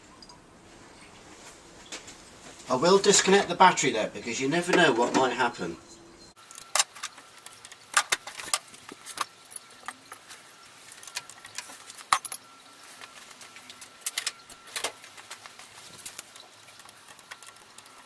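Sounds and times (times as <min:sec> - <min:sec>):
metal tools clinking on metal: 0:06.4 - 0:18.0.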